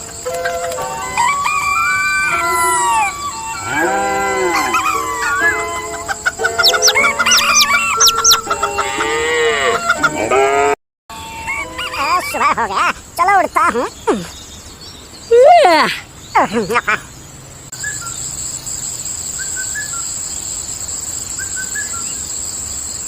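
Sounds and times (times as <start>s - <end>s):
background music: 0.0s - 10.4s
chickens clucking: 0.0s - 10.6s, 11.2s - 12.4s
rooster crowing: 0.8s - 12.0s
quick high chirps: 4.7s - 8.8s.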